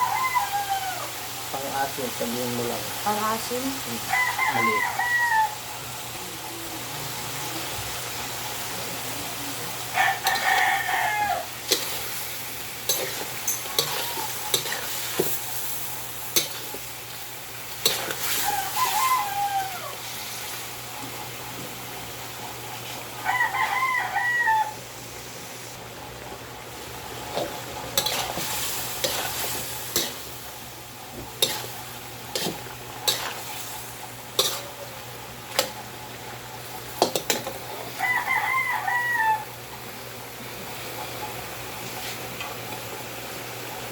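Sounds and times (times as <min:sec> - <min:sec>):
rooster crowing: 0:00.0 - 0:01.3, 0:03.9 - 0:06.9, 0:09.2 - 0:11.9, 0:13.5 - 0:14.8, 0:17.8 - 0:20.2, 0:23.1 - 0:25.0, 0:37.1 - 0:39.8
food sizzling: 0:00.0 - 0:43.9
spoon scraping metal pot: 0:12.9 - 0:15.4, 0:34.4 - 0:34.8.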